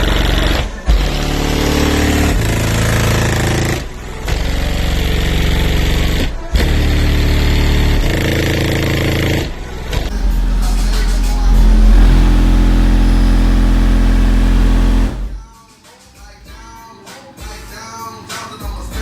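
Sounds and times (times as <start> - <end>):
loud sustained bass notes: 10.1 - 15.4.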